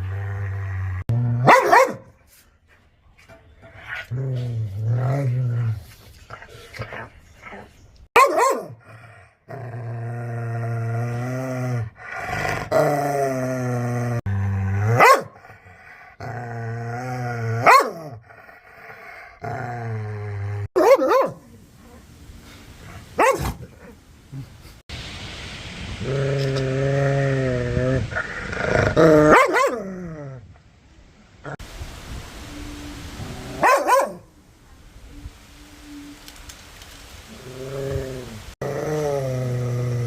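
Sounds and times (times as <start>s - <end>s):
dog barking: 1.4s - 2.1s, 8.2s - 8.8s, 15.0s - 15.4s, 17.6s - 18.0s, 20.8s - 21.5s, 23.2s - 23.6s, 29.3s - 29.8s, 33.6s - 34.3s.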